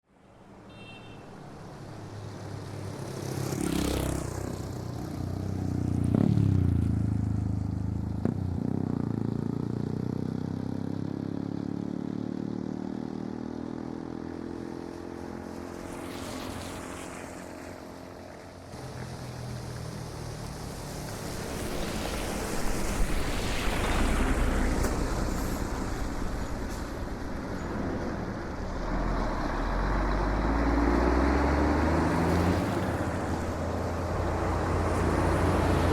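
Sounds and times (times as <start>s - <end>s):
vehicles passing: 0.2s - 10.5s, 12.8s - 35.9s.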